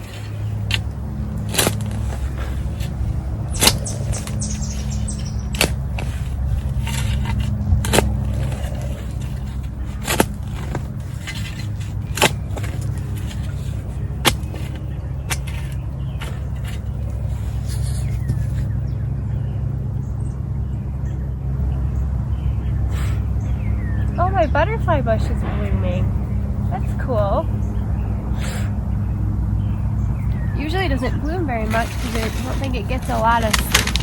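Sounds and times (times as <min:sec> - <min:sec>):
hand tool knocking and scraping soil: 0:00.0 - 0:18.7, 0:30.7 - 0:34.0
steady low rumble: 0:00.0 - 0:34.0.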